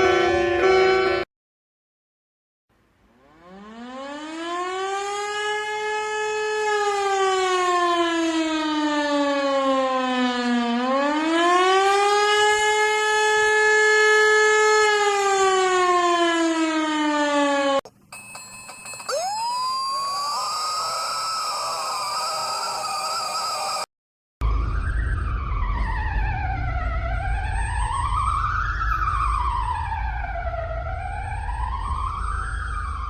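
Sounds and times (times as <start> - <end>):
warning siren wailing: 3.2 - 17.9, 18.7 - 23.9
rising whistle alert sound: 18.9 - 23.9.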